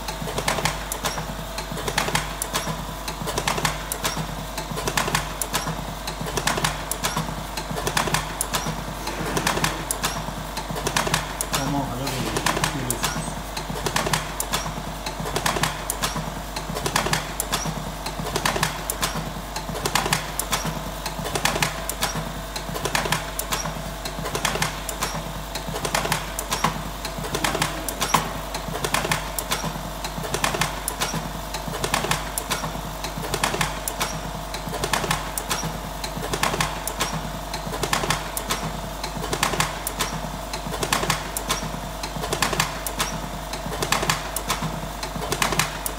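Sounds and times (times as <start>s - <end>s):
motor hum: 0.0s - 36.3s
rapid mechanical clacking: 0.0s - 45.9s.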